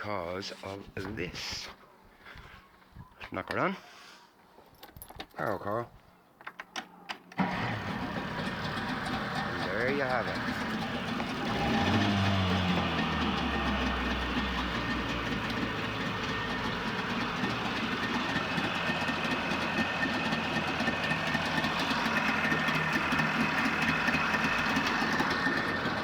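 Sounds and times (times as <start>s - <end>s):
outboard motor running: 7.4s - 26.0s.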